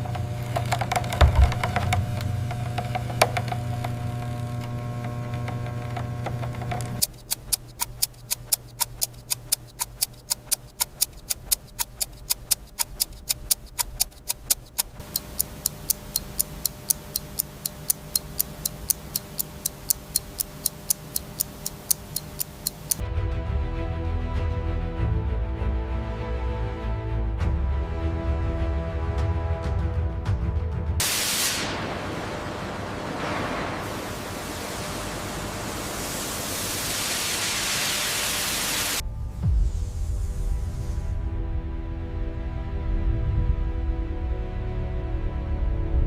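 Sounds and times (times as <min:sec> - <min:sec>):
mechanical watch ticking: 0:00.0 - 0:23.0
steady hum: 0:00.0 - 0:23.0
music: 0:23.0 - 0:31.0, 0:39.0 - 0:46.0.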